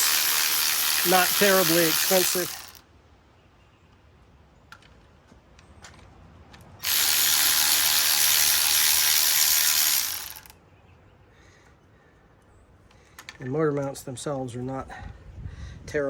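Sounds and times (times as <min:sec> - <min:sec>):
electric ratchet spinning: 0:00.0 - 0:02.8, 0:06.8 - 0:10.5.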